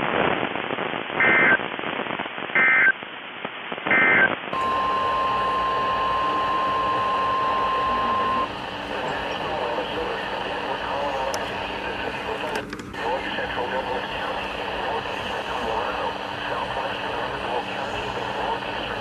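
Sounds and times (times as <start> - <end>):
radio static: 0.0 - 19.0
steady alert tone: 4.6 - 9.2.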